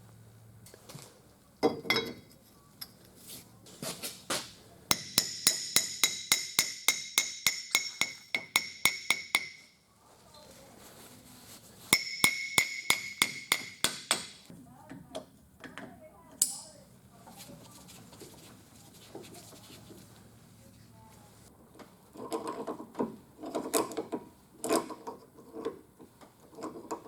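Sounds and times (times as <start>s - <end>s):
hammer tapping steel: 4.9s - 9.8s, 12.0s - 14.5s.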